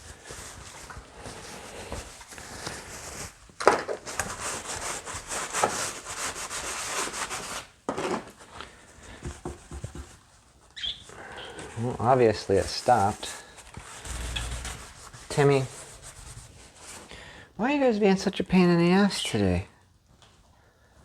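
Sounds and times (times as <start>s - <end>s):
rubbing and scrubbing: 0.0s - 3.4s, 4.0s - 8.2s, 11.5s - 17.1s.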